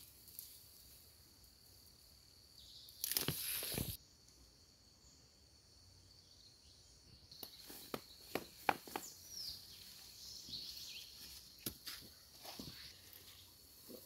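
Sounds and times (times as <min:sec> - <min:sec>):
bird chirp: 0:06.0 - 0:13.6.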